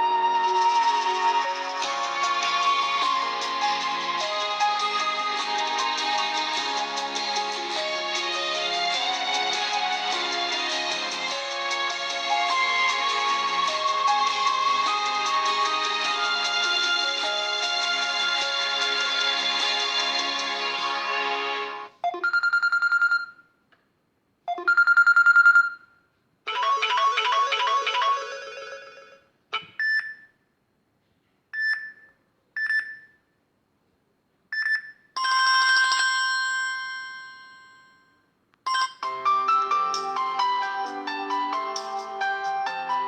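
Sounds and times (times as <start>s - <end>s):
chiming ringtone melody: 0.0s - 19.7s, 26.5s - 29.3s, 38.7s - 43.0s
busier ringtone melody: 0.0s - 19.8s, 21.8s - 23.3s, 24.6s - 25.8s, 26.5s - 29.3s, 35.2s - 38.0s, 38.7s - 43.0s.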